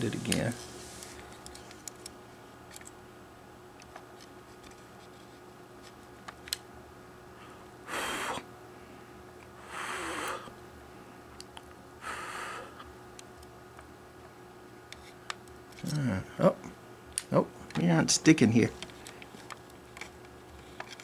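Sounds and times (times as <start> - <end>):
faint steady hum: 0.0 - 21.0
person exhaling hard: 7.9 - 8.5, 9.6 - 10.5.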